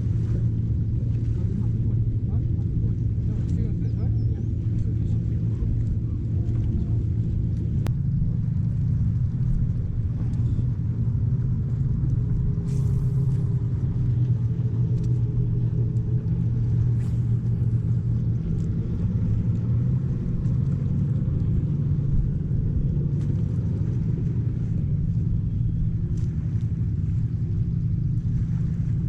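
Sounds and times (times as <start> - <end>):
low engine drone: 0.0 - 29.0.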